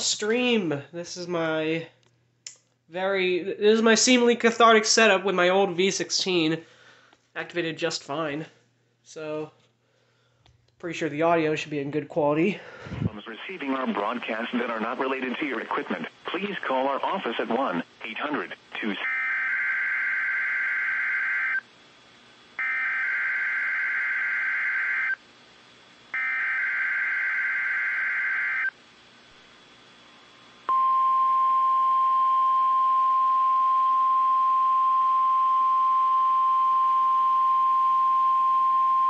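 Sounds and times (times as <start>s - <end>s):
steady warning alarm tone: 19.0s - 21.6s, 22.6s - 25.2s, 26.1s - 28.7s.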